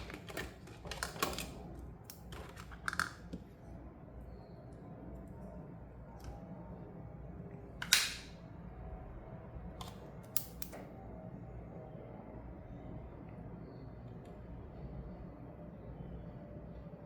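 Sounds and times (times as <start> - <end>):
plastic packaging snap: 7.8 - 8.4.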